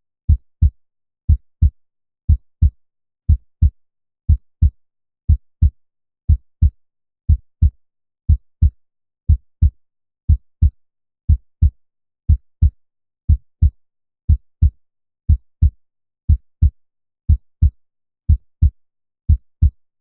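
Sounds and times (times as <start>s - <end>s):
heartbeat thumps: 0.3s - 0.7s, 12.6s - 13.8s, 14.6s - 15.8s, 17.6s - 18.8s.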